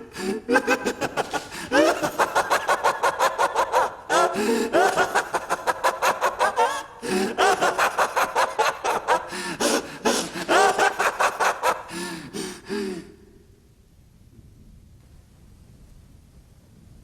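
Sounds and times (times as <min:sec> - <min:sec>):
man laughing maniacally: 0:00.0 - 0:13.2.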